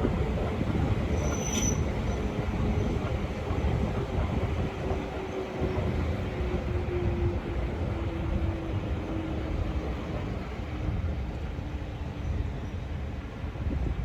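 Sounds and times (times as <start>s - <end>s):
diesel train rumbling: 0.0s - 14.0s
high squeal: 1.1s - 2.3s.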